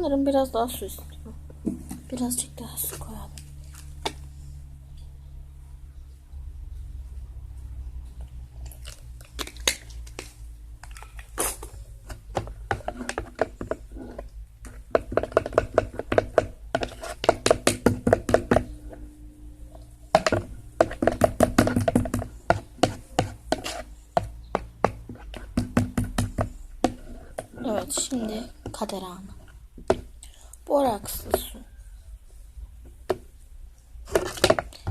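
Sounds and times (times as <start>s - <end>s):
slime being stirred with clicking taps: 8.6s - 18.9s, 19.7s - 31.5s, 34.1s - 34.9s.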